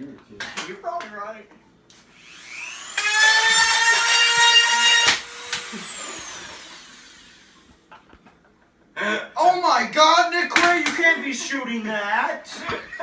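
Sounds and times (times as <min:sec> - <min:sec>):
power tool motor whining: 0:02.2 - 0:07.7.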